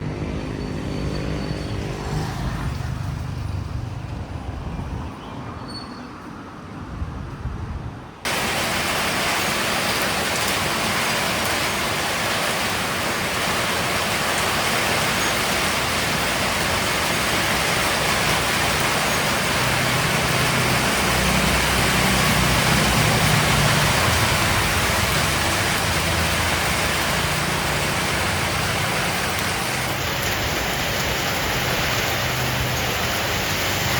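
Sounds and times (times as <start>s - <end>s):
vehicle engine in traffic: 0.0s - 6.0s, 14.2s - 33.9s
rain falling steadily: 8.3s - 33.9s.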